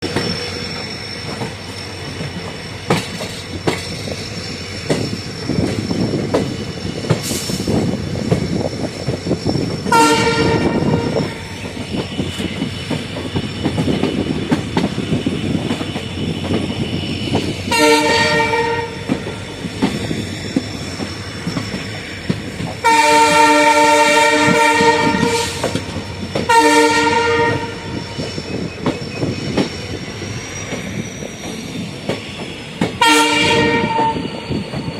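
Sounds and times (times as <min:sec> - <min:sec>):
train wheels clickety-clack: 0:00.0 - 0:34.9
locomotive horn blasts: 0:09.9 - 0:11.4, 0:17.7 - 0:19.2, 0:22.8 - 0:28.0, 0:33.0 - 0:34.3.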